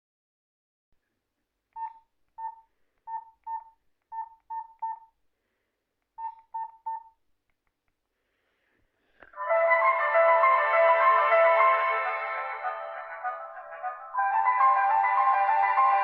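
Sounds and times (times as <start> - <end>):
phone keypad beeps: 1.8 - 5.1, 6.2 - 7.2.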